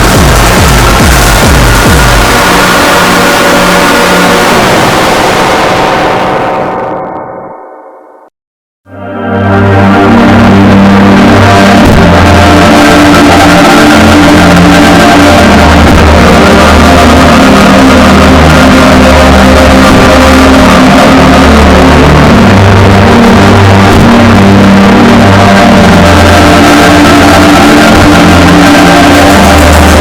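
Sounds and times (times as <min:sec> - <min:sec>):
loud music with low sustained notes: 0:00.0 - 0:08.1, 0:08.8 - 0:30.0.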